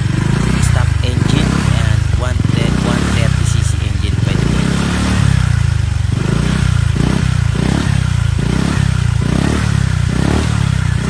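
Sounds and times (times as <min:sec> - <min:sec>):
motor scooter revving: 0:04.6 - 0:11.0.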